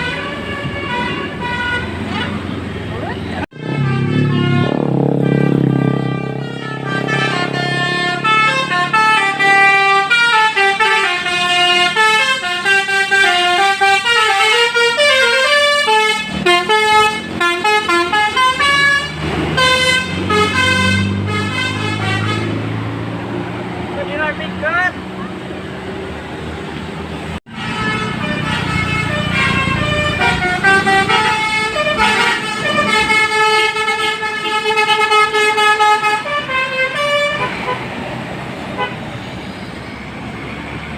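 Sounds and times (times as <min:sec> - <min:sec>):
bus musical horn playing tune: 0:00.0 - 0:02.6, 0:03.5 - 0:22.9, 0:27.4 - 0:38.0, 0:38.7 - 0:39.1.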